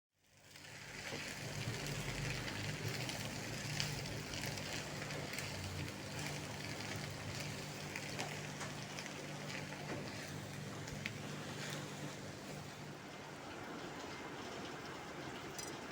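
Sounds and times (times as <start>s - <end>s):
food sizzling in frying pan: 0.2s - 12.9s.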